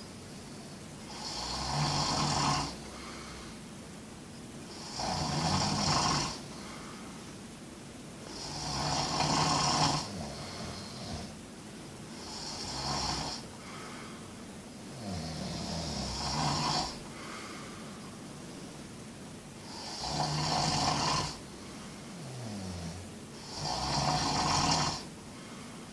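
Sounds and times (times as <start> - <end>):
person snoring: 0.5 - 3.6, 4.7 - 7.0, 8.2 - 11.4, 12.1 - 14.1, 14.9 - 17.8, 19.6 - 25.1.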